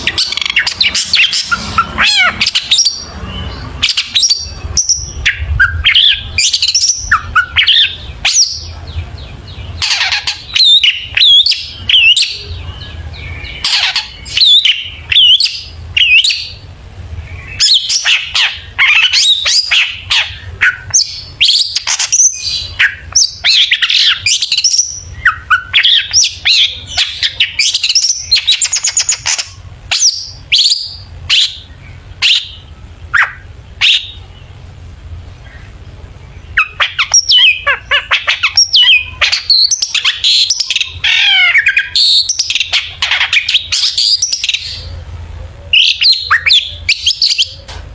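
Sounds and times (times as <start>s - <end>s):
shrike singing: 0.0s - 34.6s, 35.3s - 47.7s.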